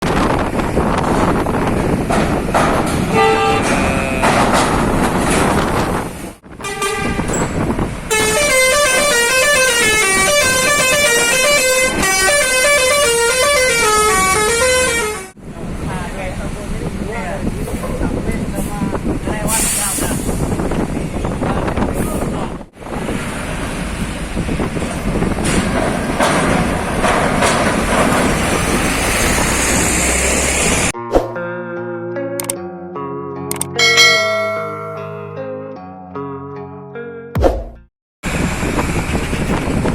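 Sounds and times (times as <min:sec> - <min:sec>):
heavy trucks rumbling: 0:00.0 - 0:31.0, 0:38.2 - 0:39.9
multi-tone bus horn melody: 0:03.1 - 0:04.4, 0:06.5 - 0:15.4.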